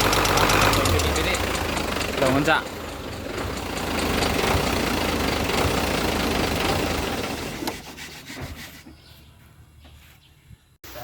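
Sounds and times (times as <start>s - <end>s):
engine idling: 0.0s - 8.0s.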